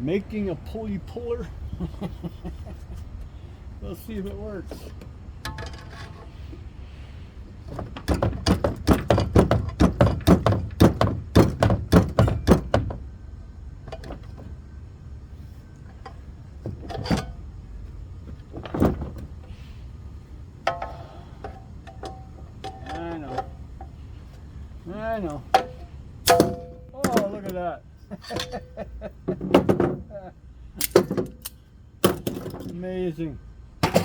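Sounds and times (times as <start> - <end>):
sharp metal-on-metal blows: 26.2 - 26.8.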